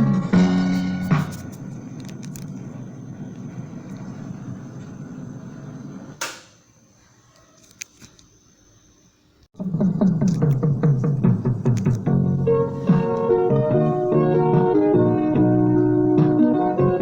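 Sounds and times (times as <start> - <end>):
cassette tape hiss: 0.0 - 9.5, 10.2 - 17.0
sharp click: 6.2 - 6.6.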